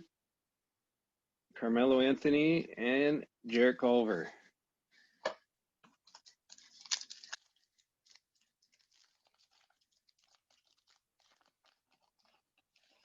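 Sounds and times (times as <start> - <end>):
card pack rustling: 6.0 - 13.0.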